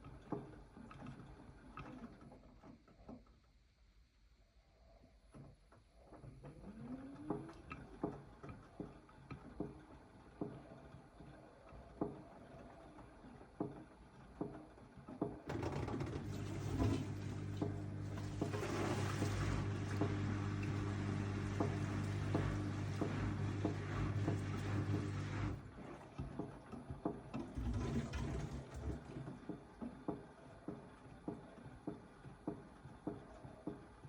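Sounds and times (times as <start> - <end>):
washing machine drum knocking: 15.2 - 25.6.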